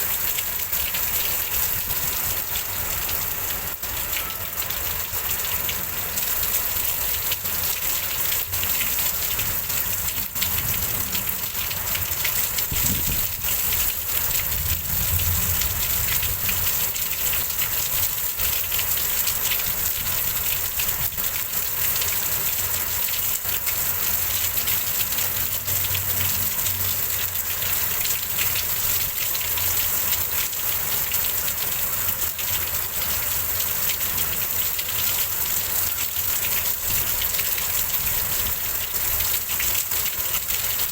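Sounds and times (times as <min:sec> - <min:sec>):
heavy rain: 0:00.0 - 0:40.9
low wind rumble: 0:12.6 - 0:16.7.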